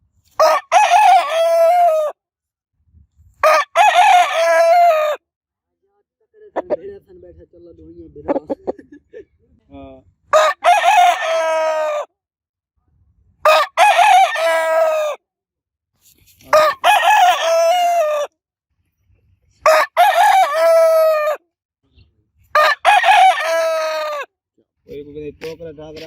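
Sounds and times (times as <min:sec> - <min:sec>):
rooster crowing: 0:00.4 - 0:02.2, 0:03.4 - 0:05.2, 0:10.3 - 0:12.1, 0:13.4 - 0:15.2, 0:16.5 - 0:18.3, 0:19.6 - 0:21.4, 0:22.5 - 0:24.3.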